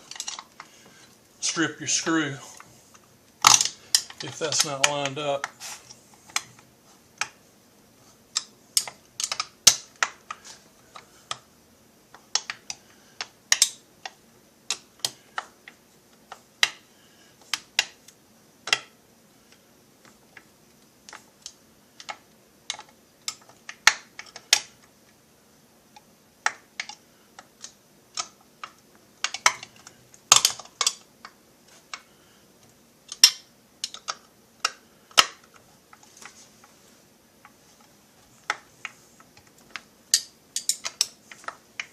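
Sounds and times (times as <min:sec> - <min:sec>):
metal parts and tools clicking: 0:00.0 - 0:00.6, 0:40.1 - 0:41.6.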